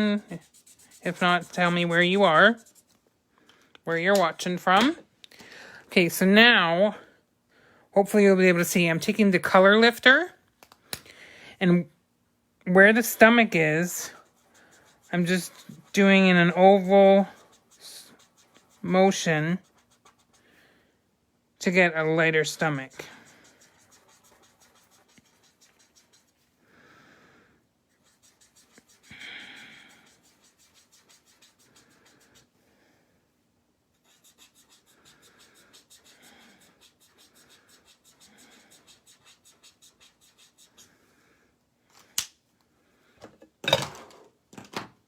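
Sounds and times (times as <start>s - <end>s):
tip scratching on cardstock: 0.2s - 2.8s, 22.9s - 26.3s, 34.1s - 40.8s.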